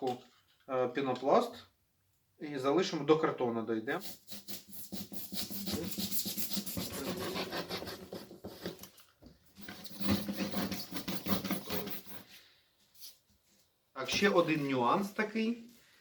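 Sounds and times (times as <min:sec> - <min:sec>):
knife sawing through foam: 0:03.9 - 0:08.8, 0:09.6 - 0:12.3.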